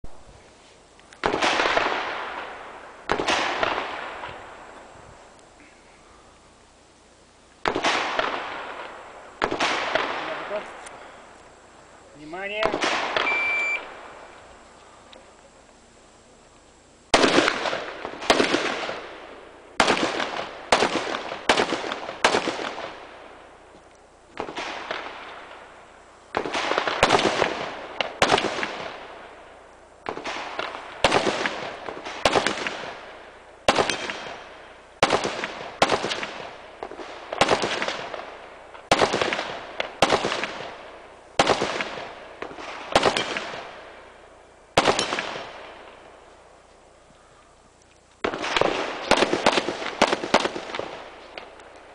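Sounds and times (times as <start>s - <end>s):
rifle shots echoing: 1.2s - 4.8s, 7.6s - 11.0s, 12.2s - 14.3s, 17.1s - 23.6s, 24.4s - 46.3s, 48.2s - 51.9s.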